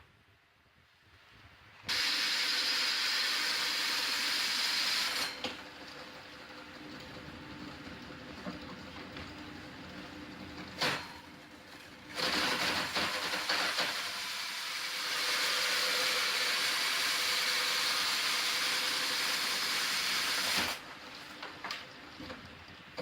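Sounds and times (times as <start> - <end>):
loud steady hiss: 0.0 - 5.3, 13.2 - 20.9.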